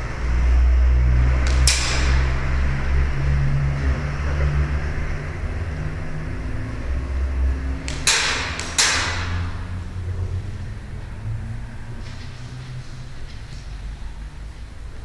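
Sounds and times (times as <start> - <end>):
steady low rumble: 0.0 - 15.0
airsoft gun shots: 7.9 - 9.6.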